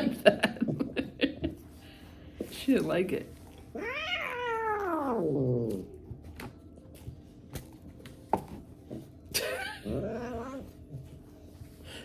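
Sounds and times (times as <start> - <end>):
cat meowing: 3.8 - 5.4.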